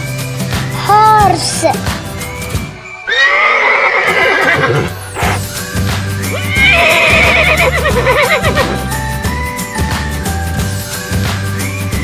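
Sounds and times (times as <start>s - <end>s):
background music: 0.0s - 12.0s
horse whinnying: 3.1s - 5.4s, 6.3s - 9.0s.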